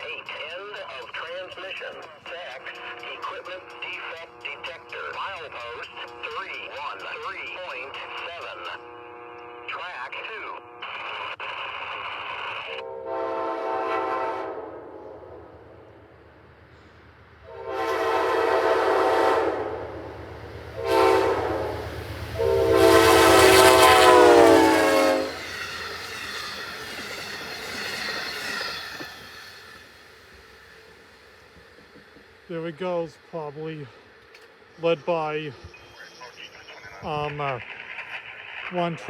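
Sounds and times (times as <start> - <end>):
train passing rumble: 0.0 - 39.0
train air horn: 8.7 - 10.0, 12.8 - 15.7, 16.8 - 26.5.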